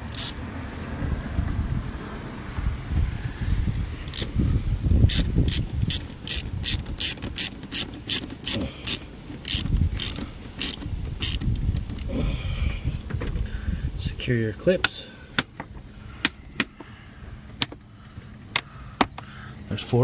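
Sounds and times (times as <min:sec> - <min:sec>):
ratchet wrench clicking: 0:00.0 - 0:00.4, 0:04.1 - 0:04.4, 0:05.1 - 0:12.1.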